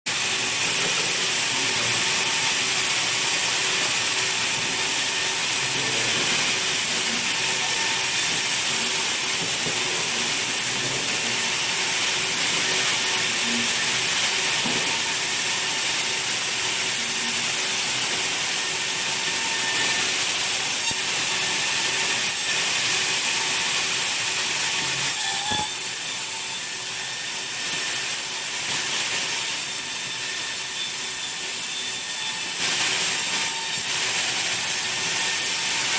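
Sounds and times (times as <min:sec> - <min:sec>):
saw cutting wood hissing: 0:00.1 - 0:35.9.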